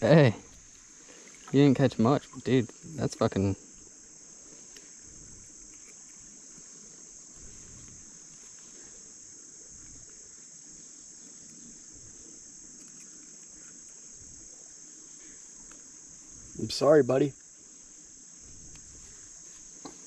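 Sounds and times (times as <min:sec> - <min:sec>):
crickets chirping: 0:00.0 - 0:20.0
faint low rumble: 0:18.4 - 0:19.4.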